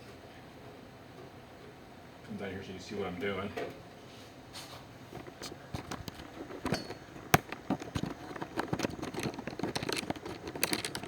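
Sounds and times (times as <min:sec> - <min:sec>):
clicks and knocks of handling: 0:05.1 - 0:11.0.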